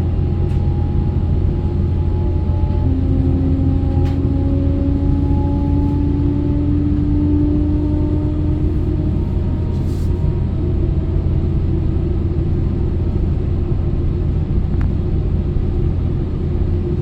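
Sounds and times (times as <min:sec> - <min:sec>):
rising engine tone: 0:02.0 - 0:09.8.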